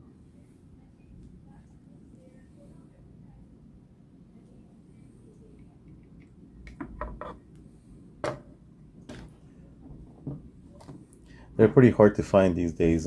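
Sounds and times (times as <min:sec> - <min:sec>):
low steady hum: 0:00.0 - 0:13.0
hard objects clicking and knocking: 0:06.0 - 0:07.4.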